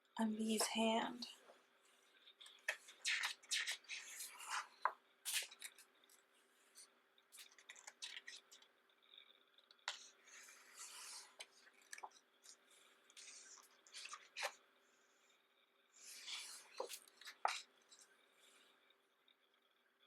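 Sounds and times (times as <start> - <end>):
pages turning and rustling: 2.2 - 8.6, 9.9 - 12.6, 13.2 - 14.6, 16.0 - 18.0.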